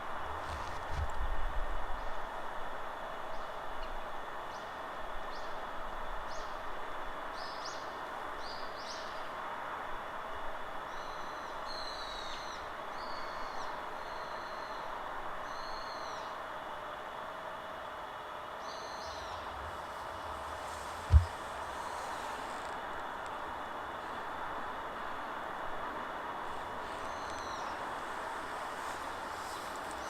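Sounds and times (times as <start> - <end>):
forest wind: 0.0 - 30.0
songbird chirps: 18.4 - 22.7, 26.8 - 30.0.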